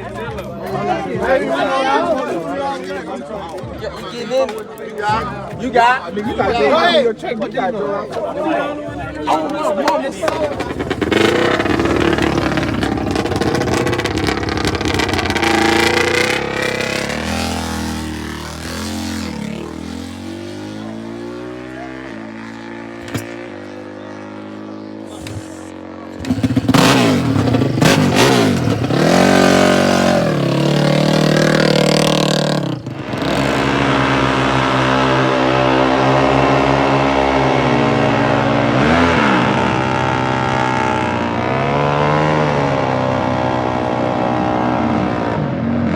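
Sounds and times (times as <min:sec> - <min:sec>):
dirt bike engines revving: 0:00.0 - 0:45.9.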